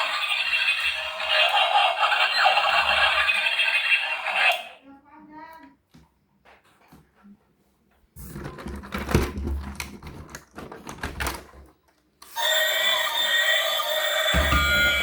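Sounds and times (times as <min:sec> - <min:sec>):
toy vehicles clicking and clattering: 0:00.0 - 0:04.8.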